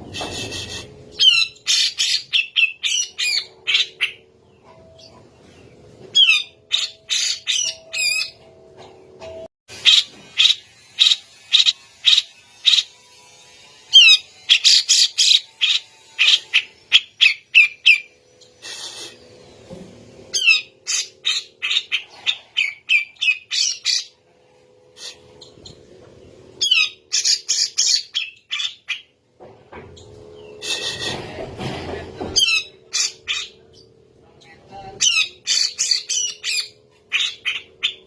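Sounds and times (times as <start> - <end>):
bird singing chattering notes: 32.4 - 38.0.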